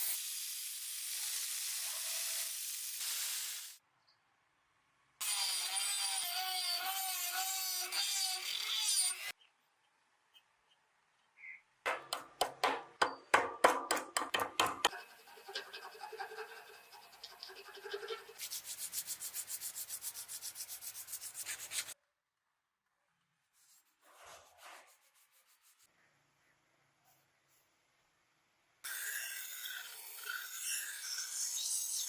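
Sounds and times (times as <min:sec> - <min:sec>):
abrasive rubbing on knife: 0:14.9 - 0:22.0.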